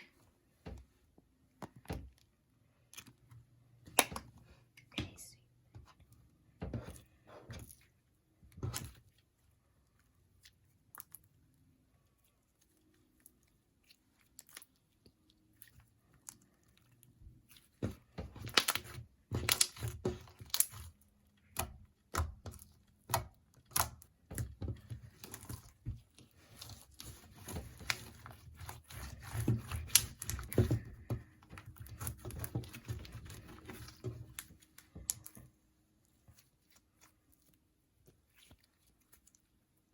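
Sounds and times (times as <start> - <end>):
sticky crackling and popping: 12.5 - 35.5.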